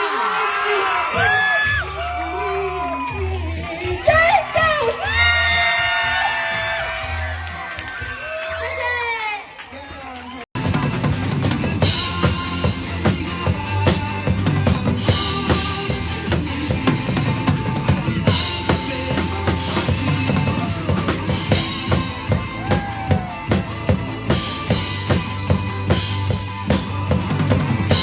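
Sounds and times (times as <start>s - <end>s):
backing track music: 1.1s - 8.4s, 10.6s - 28.0s
drum kit driving beat: 10.6s - 28.0s.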